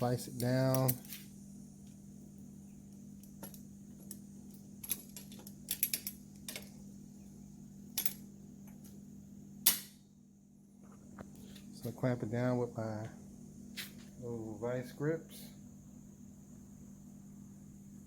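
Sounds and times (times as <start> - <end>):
sharp metal snap: 9.6 - 10.0.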